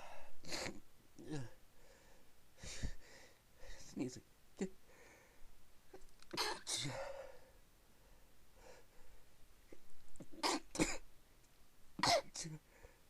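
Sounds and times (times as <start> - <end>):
person sneezing: 6.4 - 7.1, 12.0 - 12.6.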